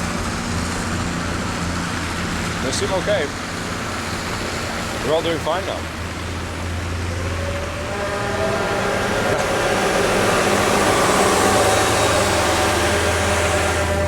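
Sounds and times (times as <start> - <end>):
vehicle engine under load: 0.0 - 14.0.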